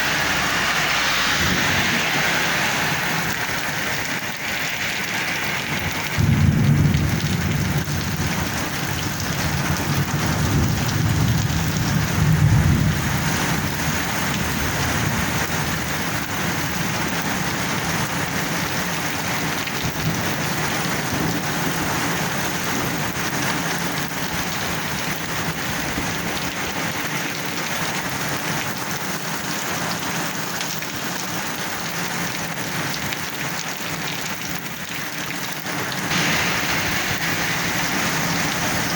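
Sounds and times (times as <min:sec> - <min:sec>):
thunder rolling: 0:00.0 - 0:22.4, 0:36.1 - 0:38.9
heavy rain falling: 0:00.0 - 0:38.9.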